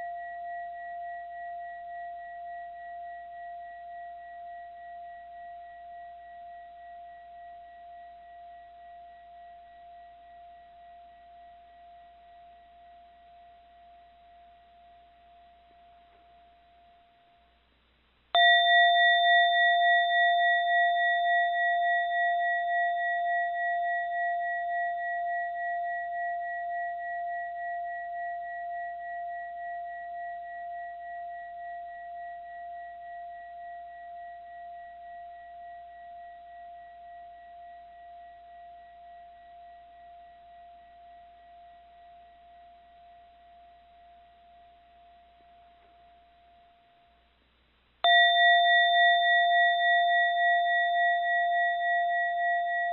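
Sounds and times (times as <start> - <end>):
mindfulness bell ringing: 18.4 - 29.2, 48.0 - 52.9.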